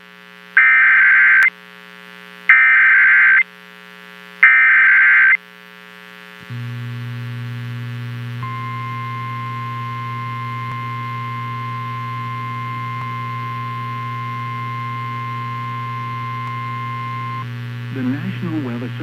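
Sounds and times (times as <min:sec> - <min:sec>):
buzzy data bursts: 0:00.6 - 0:01.5, 0:02.5 - 0:03.4, 0:08.4 - 0:19.0
steady high alert tone: 0:00.6 - 0:01.5, 0:02.5 - 0:03.4
steady low hum: 0:06.4 - 0:19.0.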